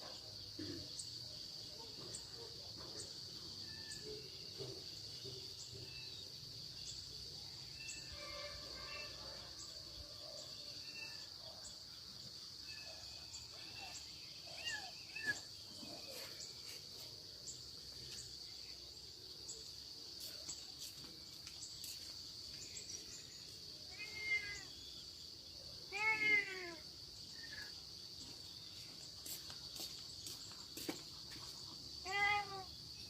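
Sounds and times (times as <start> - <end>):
cat meowing: 23.9 - 24.7, 25.9 - 26.8, 32.0 - 32.7.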